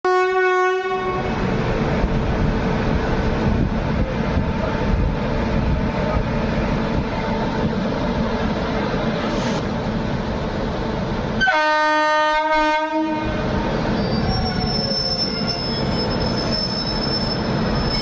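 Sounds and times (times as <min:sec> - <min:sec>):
locomotive horn blast: 0:00.0 - 0:01.4, 0:11.4 - 0:13.5
train rumble: 0:00.1 - 0:18.0.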